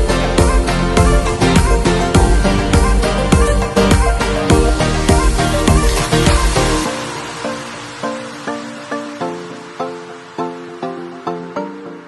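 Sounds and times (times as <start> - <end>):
electronic dance music: 0.0 - 12.0.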